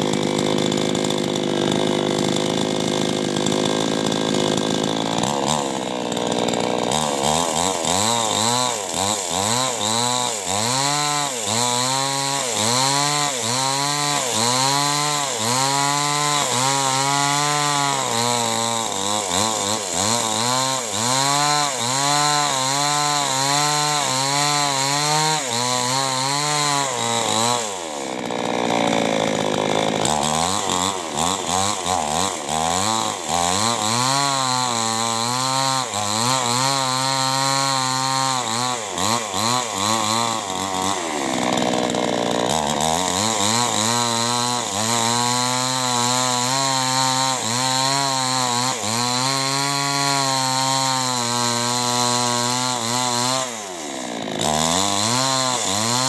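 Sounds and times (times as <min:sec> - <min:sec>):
chainsaw cutting into wood: 0:00.0 - 0:56.0.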